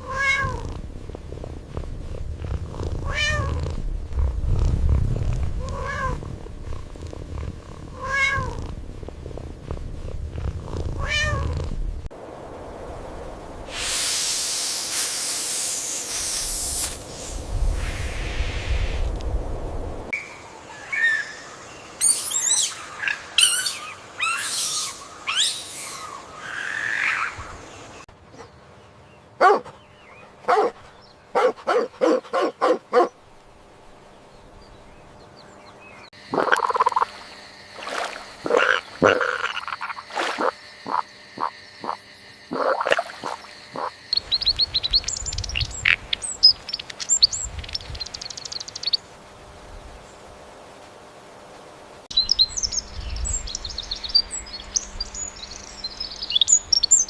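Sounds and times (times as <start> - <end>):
frogs croaking: 36.1 - 49.1.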